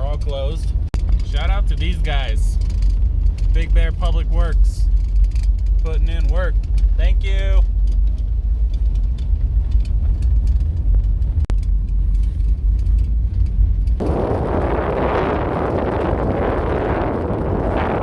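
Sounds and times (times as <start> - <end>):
vehicle engine and road noise: 0.0 - 18.0
wind on microphone: 13.6 - 18.0.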